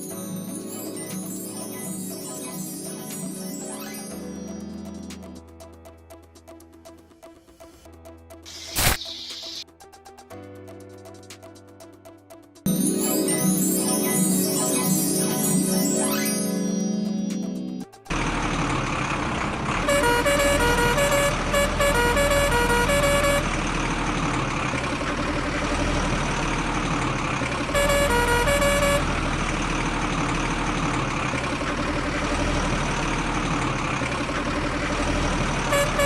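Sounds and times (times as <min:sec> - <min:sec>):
vehicle motor running: 0:18.1 - 0:36.0
multi-note horn: 0:19.8 - 0:23.6, 0:27.8 - 0:29.3, 0:35.7 - 0:36.0.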